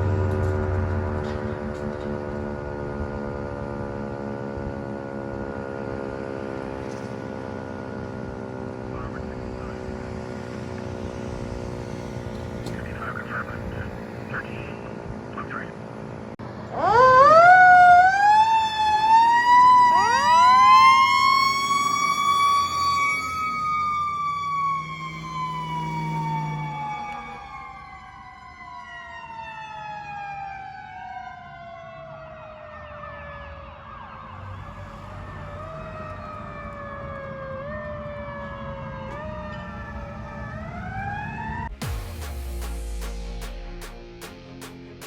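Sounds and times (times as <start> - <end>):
siren wailing: 16.4 - 45.0.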